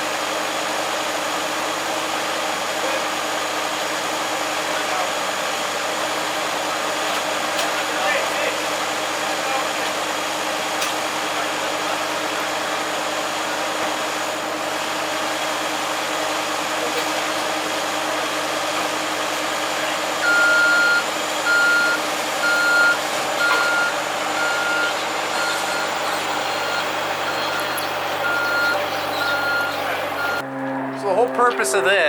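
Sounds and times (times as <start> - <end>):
machine engine running: 0.1 - 32.0
backup alarm beeping: 20.2 - 30.4.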